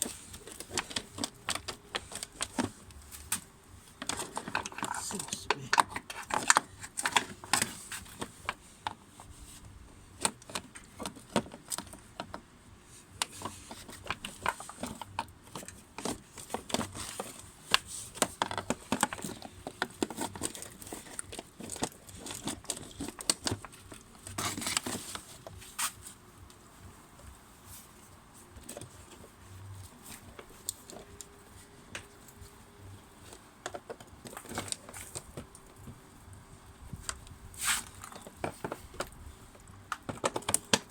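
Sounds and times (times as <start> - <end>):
plastic parts clicking and rattling: 0.0 - 9.3, 10.0 - 25.7, 28.6 - 40.9.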